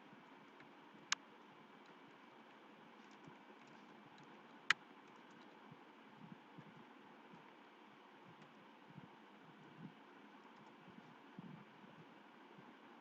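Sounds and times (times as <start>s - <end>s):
low steady hiss: 0.0s - 13.0s
faint ticks: 0.2s - 5.8s, 9.8s - 11.5s.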